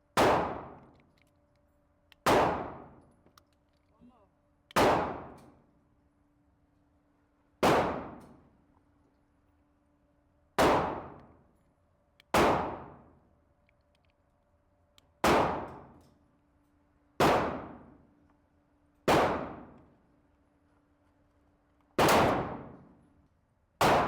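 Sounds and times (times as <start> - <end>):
pistol shots echoing: 22.0 - 22.6.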